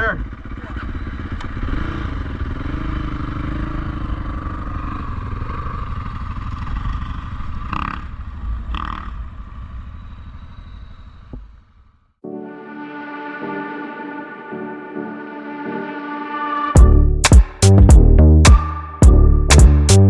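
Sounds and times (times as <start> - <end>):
atv engine rumbling: 0.0 - 9.9
brief high-pitched sounds: 12.5 - 20.0.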